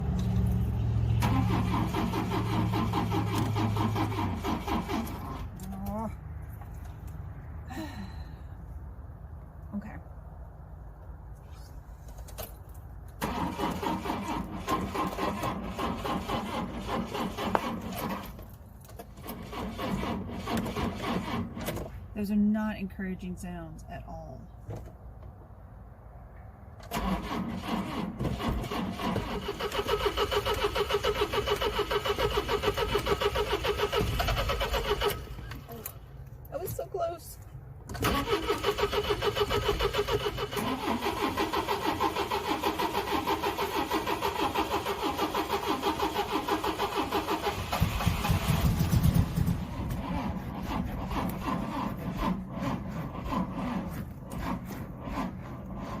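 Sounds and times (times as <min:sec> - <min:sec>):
engine cranking by starter motor: 0:00.0 - 0:05.7, 0:13.1 - 0:22.0, 0:26.8 - 0:36.1, 0:37.9 - 0:56.0.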